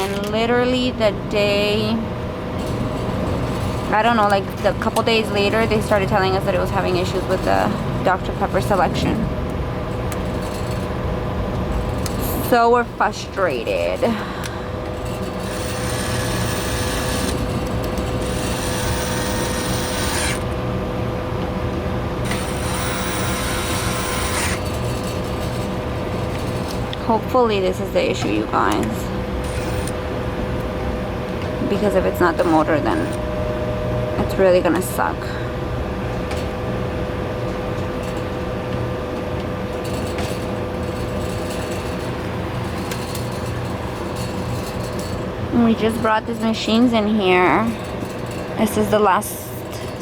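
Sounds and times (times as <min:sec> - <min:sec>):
steady mechanical hum: 0:00.0 - 0:50.0
power drill whining: 0:14.2 - 0:20.6, 0:22.2 - 0:27.0, 0:28.8 - 0:30.0, 0:31.9 - 0:33.2.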